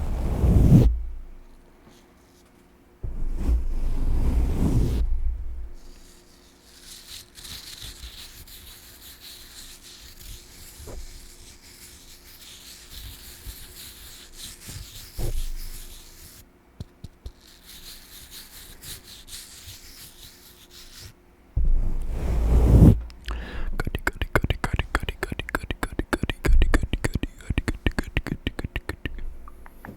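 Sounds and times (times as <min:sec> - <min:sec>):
scratchy brushing on microphone: 0:00.0 - 0:01.5, 0:03.0 - 0:16.4, 0:17.2 - 0:23.1, 0:23.7 - 0:29.4
rapid mouth clicks: 0:23.1 - 0:29.9.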